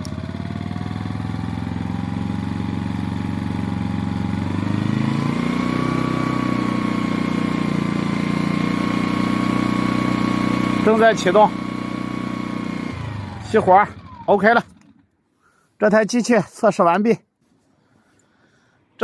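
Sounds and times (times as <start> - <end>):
engine whine: 0.0 - 15.2
petrol generator running: 0.0 - 15.2.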